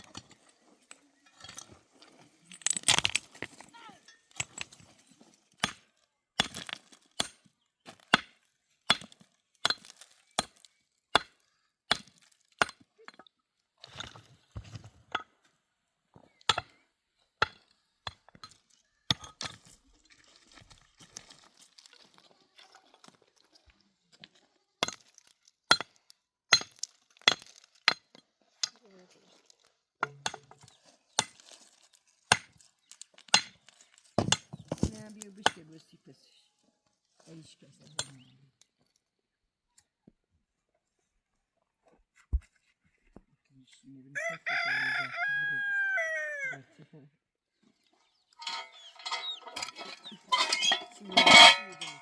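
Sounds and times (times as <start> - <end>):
chopping strikes on wood: 34.2 - 35.1.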